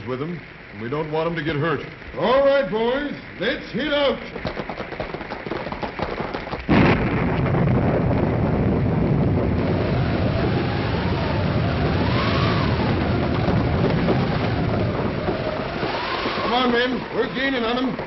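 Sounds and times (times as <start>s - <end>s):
rain and storm noise: 0.0s - 18.0s
wind whistling: 0.0s - 18.0s
rapid clatter of hooves: 1.5s - 6.8s, 9.7s - 18.0s
thunder crash: 5.5s - 18.0s.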